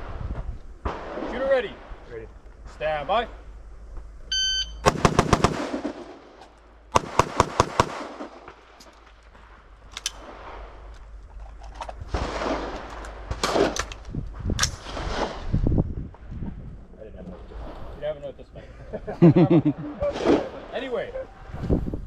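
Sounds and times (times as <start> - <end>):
quick pistol shots: 4.8 - 6.2, 6.9 - 8.5
rapid rifle shots: 4.8 - 8.6
gun being handled: 9.8 - 10.2, 10.9 - 12.0.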